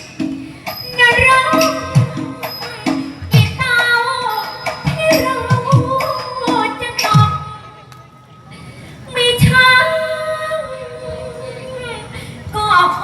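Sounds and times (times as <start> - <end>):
heavy drum strikes: 0.0 - 4.0, 4.6 - 7.5
woman singing: 0.4 - 7.7, 9.1 - 13.0.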